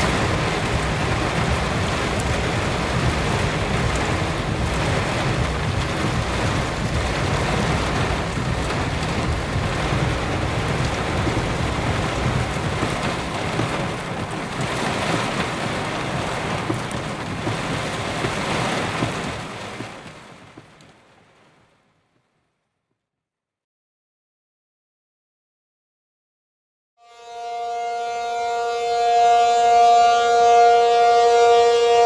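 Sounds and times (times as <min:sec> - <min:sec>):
steady low rumble: 0:00.0 - 0:18.4
heavy rain pouring: 0:00.0 - 0:22.0.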